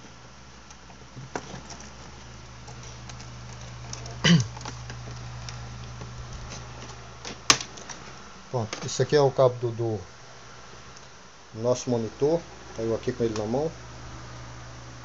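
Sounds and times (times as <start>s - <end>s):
cable clicks and rattles: 0.6s - 9.0s.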